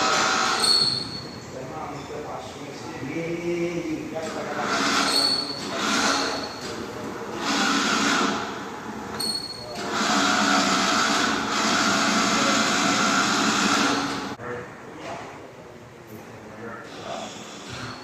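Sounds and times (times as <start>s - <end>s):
machine whirring hiss: 0.0s - 1.3s, 3.9s - 14.4s, 16.9s - 18.0s.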